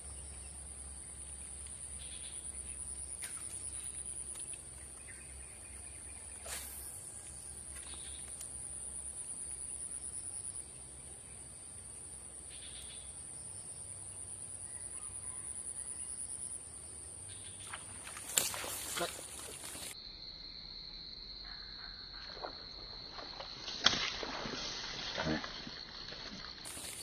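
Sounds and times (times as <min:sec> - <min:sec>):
insect trilling: 0:05.9 - 0:10.6.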